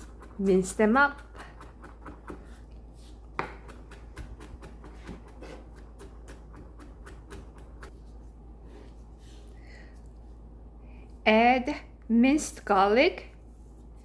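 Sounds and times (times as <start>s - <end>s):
knife chopping on cutting board: 0.0s - 2.6s, 3.2s - 8.0s.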